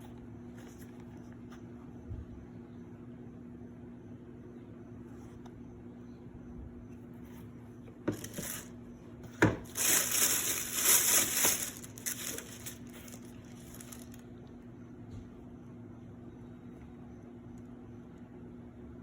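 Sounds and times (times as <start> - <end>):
paper crinkling and rustling: 8.1 - 8.7, 9.6 - 14.2.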